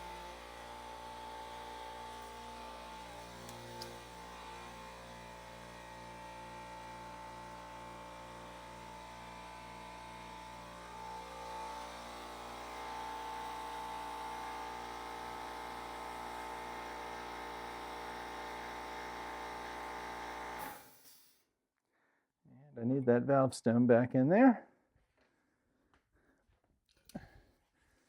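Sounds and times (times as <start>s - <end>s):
air compressor motor hum: 0.0s - 20.9s.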